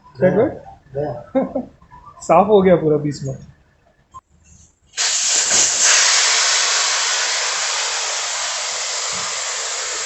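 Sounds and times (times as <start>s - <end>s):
air hissing out of tyre: 5.0s - 10.0s.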